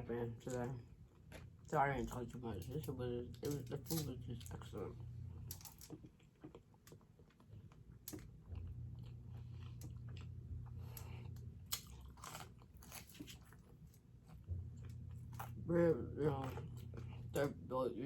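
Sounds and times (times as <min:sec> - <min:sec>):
chewing and biting food: 0:05.5 - 0:15.6, 0:16.2 - 0:17.6.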